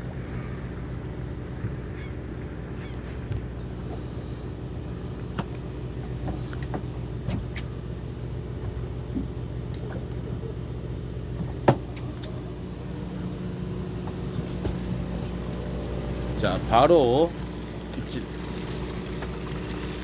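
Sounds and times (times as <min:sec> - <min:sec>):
boat engine humming: 0:00.0 - 0:20.0.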